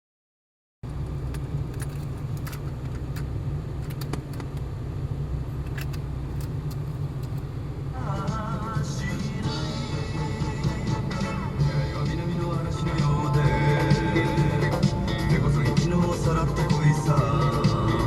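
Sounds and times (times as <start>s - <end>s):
vehicle engine running: 0.8s - 18.0s
sharp clicks and rattles: 0.9s - 4.7s, 5.6s - 7.5s
music: 8.0s - 18.0s.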